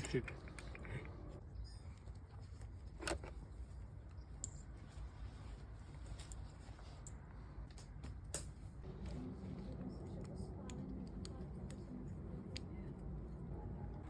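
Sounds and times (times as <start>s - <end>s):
faint low rumble: 8.8s - 14.0s.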